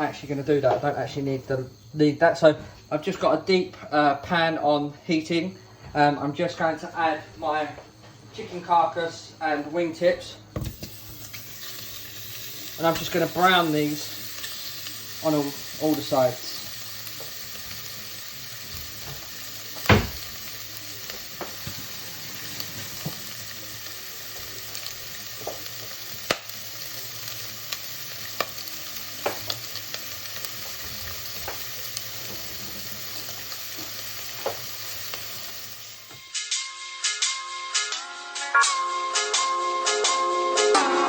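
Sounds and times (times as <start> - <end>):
chicken sizzling in a pan: 0.0 - 1.9, 10.6 - 36.3
knocks of pieces in pan: 19.0 - 21.9, 28.3 - 29.7.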